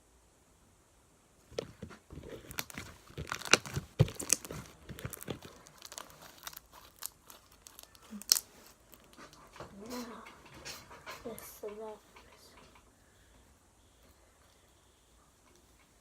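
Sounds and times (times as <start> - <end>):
crunchy slime crackles and pops: 1.5 - 9.2.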